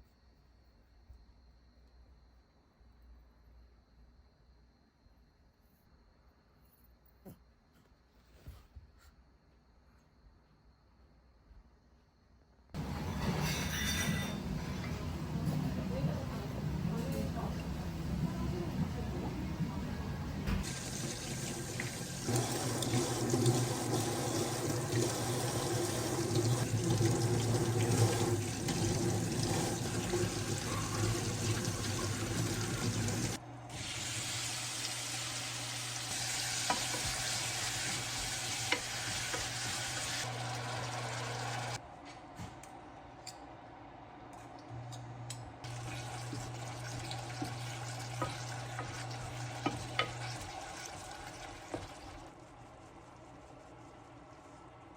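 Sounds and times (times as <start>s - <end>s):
tap water running into sink: 20.4s - 41.8s, 45.7s - 52.3s.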